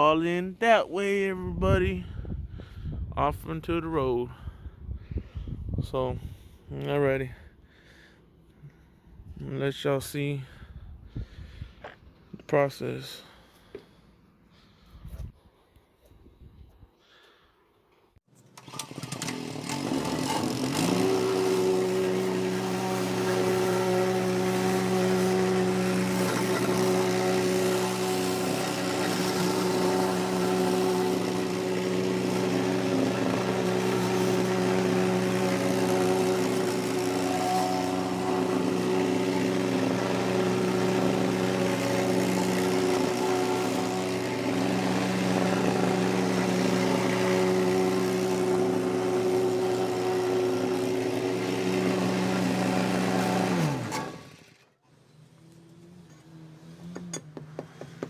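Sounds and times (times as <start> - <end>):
plate compactor engine running: 18.3 - 58.0.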